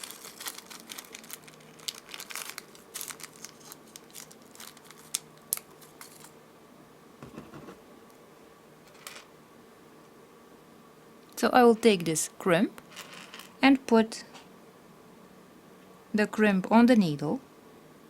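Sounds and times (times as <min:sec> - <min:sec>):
hands handling jewelry supplies: 0:07.2 - 0:07.8.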